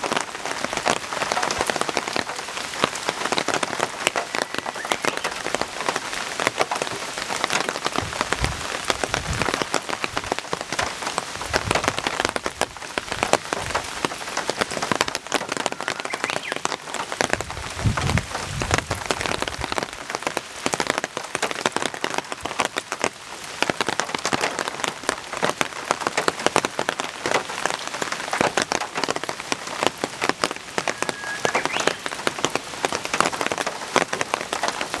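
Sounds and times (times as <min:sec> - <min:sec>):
heavy rain falling: 0:00.0 - 0:35.0.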